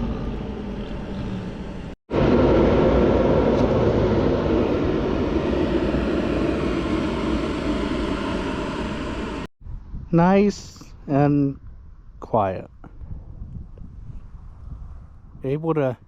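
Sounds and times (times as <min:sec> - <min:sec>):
vehicle engine rumbling: 0:00.0 - 0:09.9.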